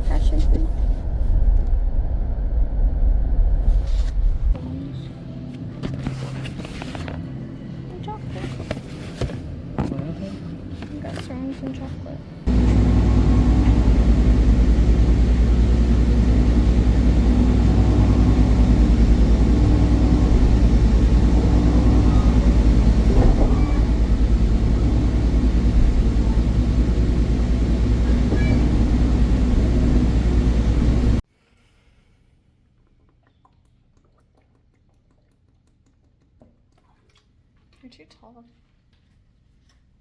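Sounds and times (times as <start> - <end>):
vehicle drone: 12.5 - 31.2.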